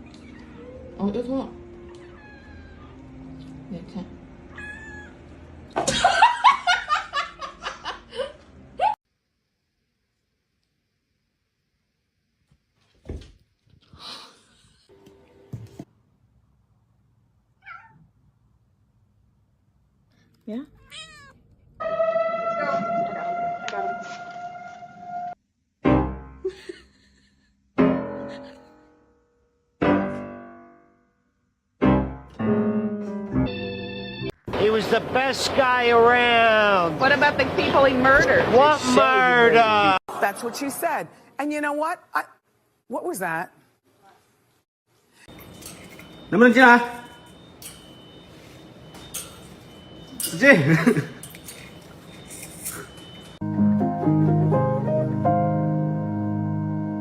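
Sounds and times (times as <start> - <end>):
deep piano chords: 21.8 - 26.5, 27.8 - 29.0, 29.8 - 31.0, 31.8 - 36.3, 53.0 - 57.0
person laughing: 26.4 - 27.5, 28.2 - 28.8, 50.4 - 51.2.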